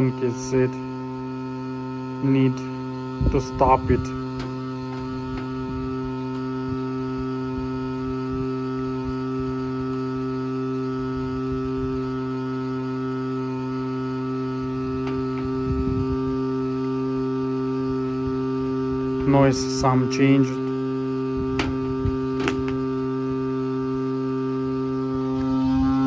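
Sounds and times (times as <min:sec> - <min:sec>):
water valve humming: 0:02.6 - 0:08.0, 0:13.3 - 0:23.5.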